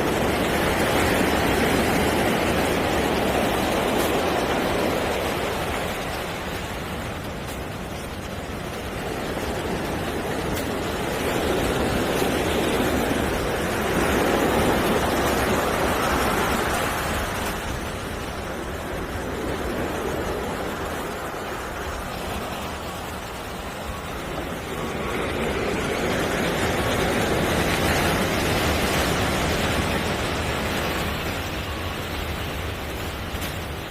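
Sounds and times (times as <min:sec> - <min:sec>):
ocean surf washing: 0:00.0 - 0:33.9.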